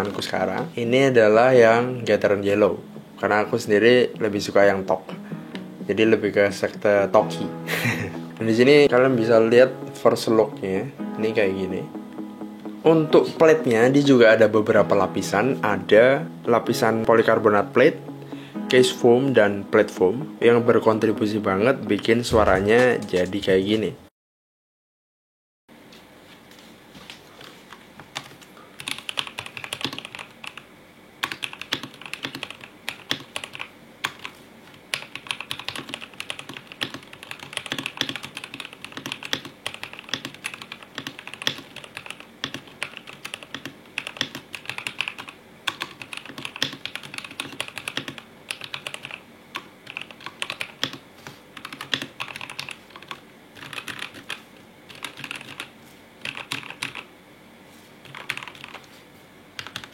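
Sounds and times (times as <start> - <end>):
mechanical keyboard typing: 28.2 - 51.0, 51.6 - 57.1, 58.0 - 58.8, 59.6 - 59.9.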